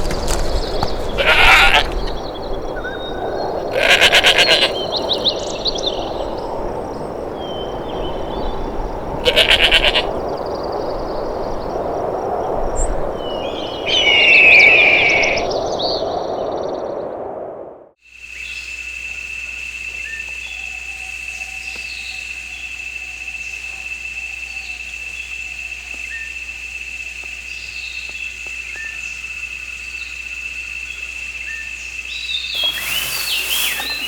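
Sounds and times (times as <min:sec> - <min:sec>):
animal bleating: 0:01.2 - 0:02.0, 0:03.7 - 0:04.8, 0:09.2 - 0:10.1
high bird chirps: 0:13.5 - 0:15.4, 0:32.6 - 0:34.0
background hiss: 0:32.6 - 0:34.0.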